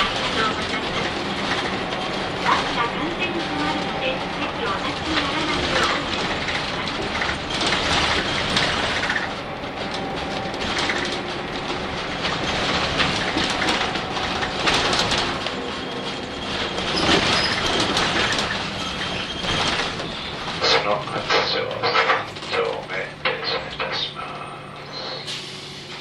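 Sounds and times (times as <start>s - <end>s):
bus engine running: 0.0s - 26.0s
rattles from bus body: 0.0s - 26.0s.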